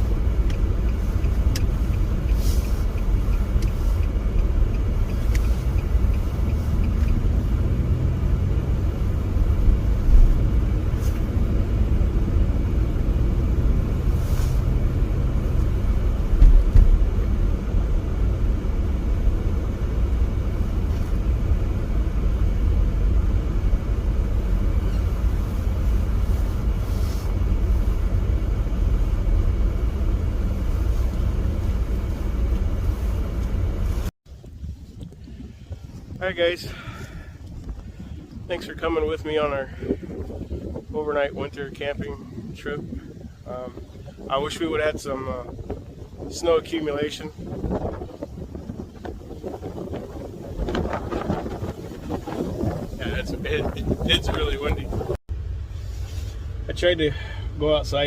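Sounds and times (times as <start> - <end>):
road and engine rumble in car: 0.0 - 58.0
car bumps: 16.2 - 17.2.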